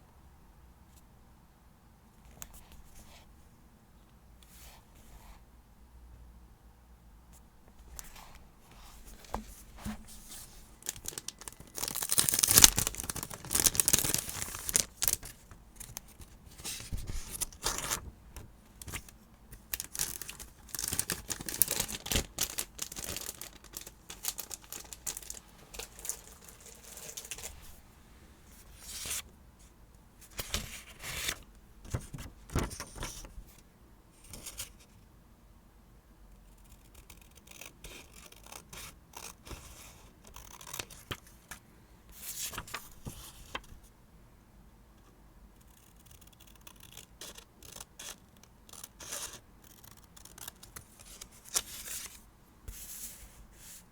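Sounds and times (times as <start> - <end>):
paper crinkling: 9.0 - 18.1, 18.8 - 27.8, 42.3 - 43.7
tape peeled and torn: 10.8 - 15.3.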